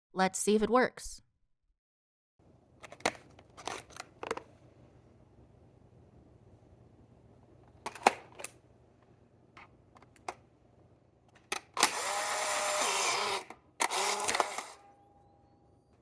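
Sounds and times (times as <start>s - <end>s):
camera motor whirring: 11.8s - 14.8s
faint steady tone: 14.8s - 16.0s.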